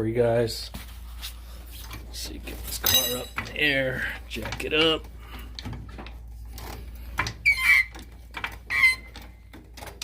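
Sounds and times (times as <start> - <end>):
car jack squeaking: 7.3 - 10.0.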